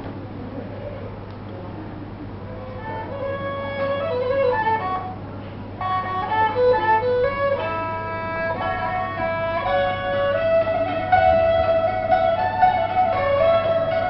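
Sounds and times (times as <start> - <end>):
plucked and bowed strings melody: 2.5 - 5.2, 5.8 - 14.0.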